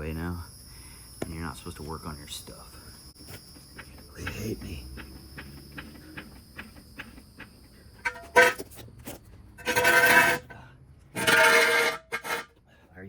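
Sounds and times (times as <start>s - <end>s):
metallic screeching and scraping: 8.0s - 12.5s.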